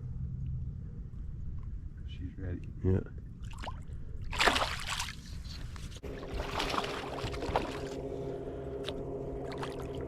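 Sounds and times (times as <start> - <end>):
water noise: 2.7 - 10.0
water splash: 3.4 - 5.2, 6.1 - 8.0
boat motor humming: 6.0 - 10.0.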